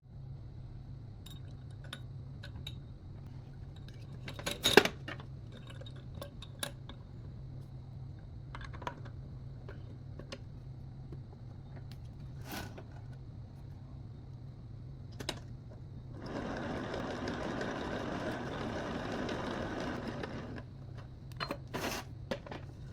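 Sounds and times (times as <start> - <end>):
popcorn machine humming: 15.1 - 22.9.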